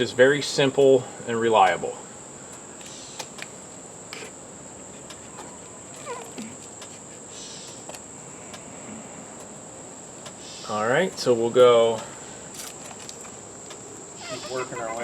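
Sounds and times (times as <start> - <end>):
high-pitched insect trill: 12.4 - 15.0
short falling call: 14.2 - 15.0.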